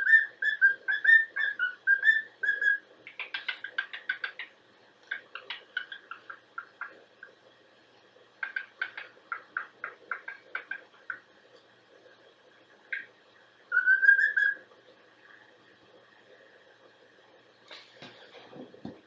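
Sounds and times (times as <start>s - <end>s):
bird chirping: 0.0s - 7.0s, 8.4s - 11.2s, 13.7s - 14.6s.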